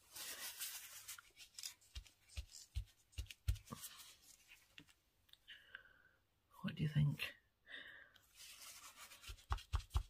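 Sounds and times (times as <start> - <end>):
paper crackling: 0.0 - 4.4.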